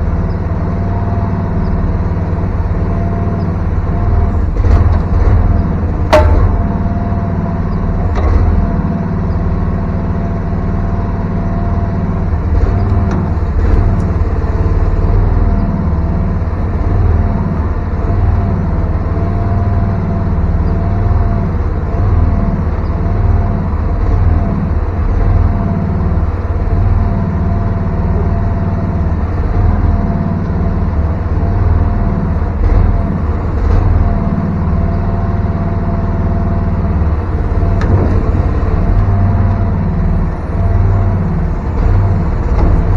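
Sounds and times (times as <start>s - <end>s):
excavator engine running: 0.0s - 42.9s.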